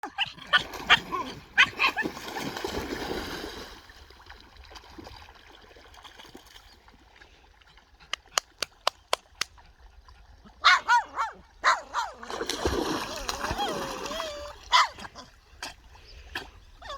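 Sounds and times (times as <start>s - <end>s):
dogs barking and yipping: 0.0s - 2.2s, 10.6s - 12.2s, 13.5s - 15.3s.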